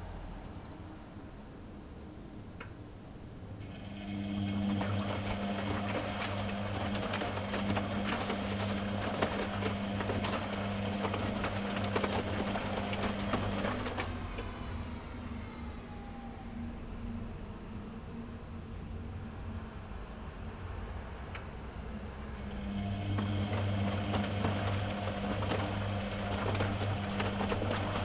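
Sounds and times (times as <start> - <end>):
washing machine motor hum: 3.5 - 16.4, 22.2 - 28.0.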